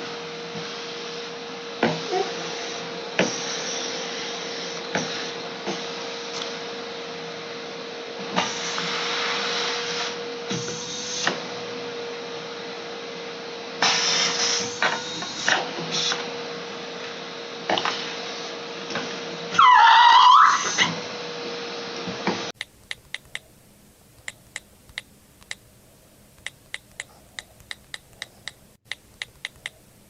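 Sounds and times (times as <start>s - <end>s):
sharp clicks and taps: 22.6s - 23.5s, 24.1s - 25.7s, 26.3s - 29.8s.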